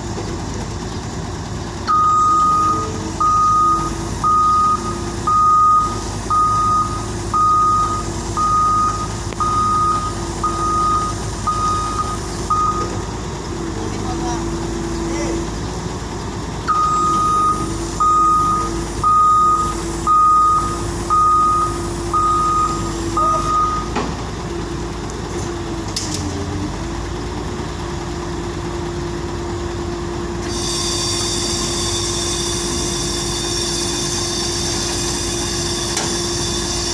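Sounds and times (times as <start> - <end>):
diesel engine running: 0.0 - 36.9
reversing alarm beeping: 1.9 - 13.2, 16.7 - 24.0, 30.3 - 36.9
high multi-tone whine: 30.4 - 36.9.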